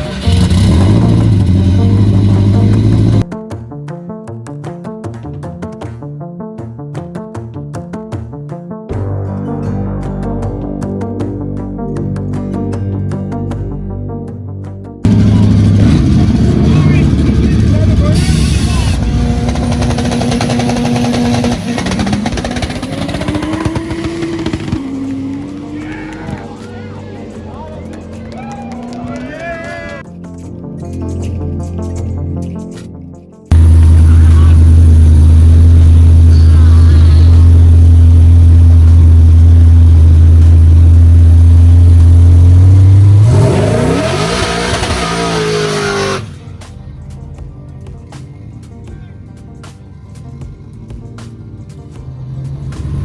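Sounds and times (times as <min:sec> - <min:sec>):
vehicle engine revving: 0:00.0 - 0:03.3, 0:15.0 - 0:28.4, 0:33.5 - 0:46.7, 0:50.1 - 0:53.0.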